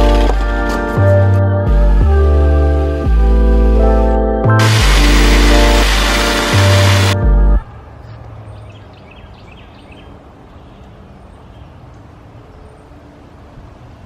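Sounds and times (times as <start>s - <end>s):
background music: 0.0s - 7.6s.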